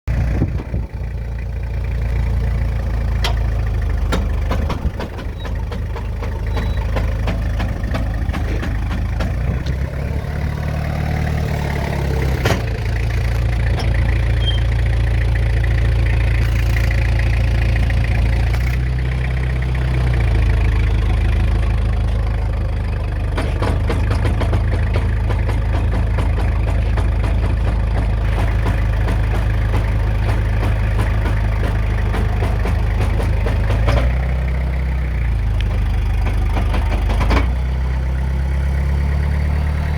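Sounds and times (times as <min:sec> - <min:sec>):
diesel engine idling: 0:00.1 - 0:39.9
sharp clunks from drive joints: 0:03.1 - 0:10.4, 0:11.3 - 0:14.8, 0:23.2 - 0:34.4.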